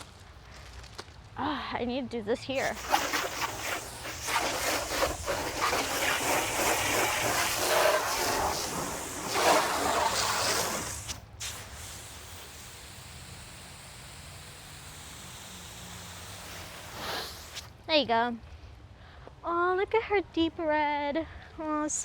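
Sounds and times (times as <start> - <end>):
hose spraying water on car: 2.5 - 17.7.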